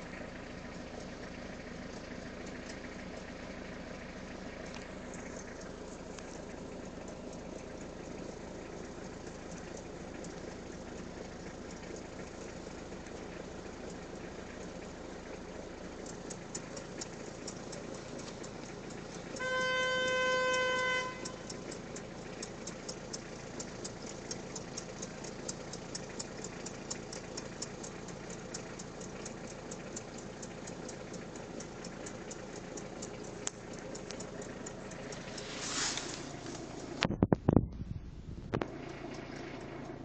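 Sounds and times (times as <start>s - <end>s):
car engine running: 0.0s - 40.0s
engine ticking: 0.0s - 40.0s
car horn: 19.3s - 21.8s.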